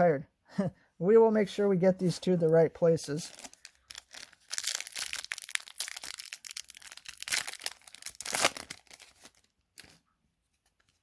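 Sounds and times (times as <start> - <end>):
foil wrapper crinkling and tearing: 3.2 - 10.0.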